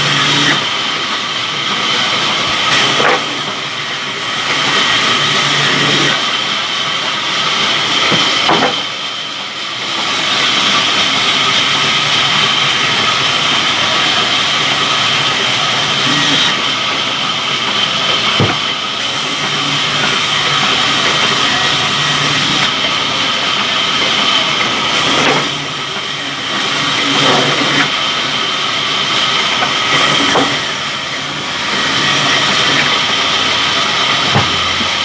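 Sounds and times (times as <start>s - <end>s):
sawmill saw cutting wood: 0.0s - 9.0s, 9.8s - 35.0s
sharp knocks: 34.2s - 35.0s.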